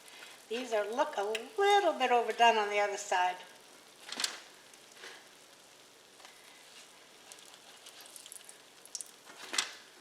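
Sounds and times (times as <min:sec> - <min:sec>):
dough frying in oil: 0:00.0 - 0:10.0.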